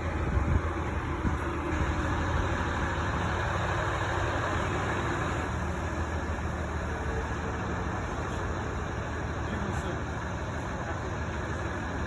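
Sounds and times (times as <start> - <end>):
diesel engine droning: 0.0 - 12.0.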